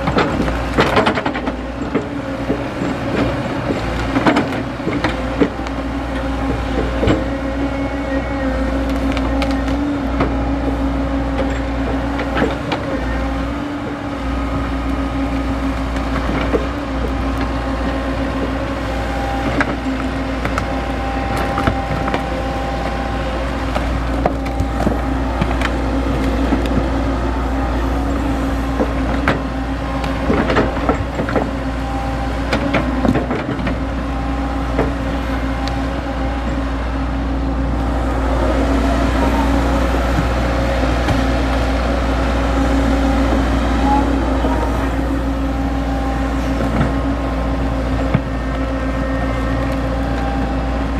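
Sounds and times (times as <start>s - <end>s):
machine knocks and clanks: 0.0s - 7.4s
excavator diesel engine running: 0.0s - 50.9s.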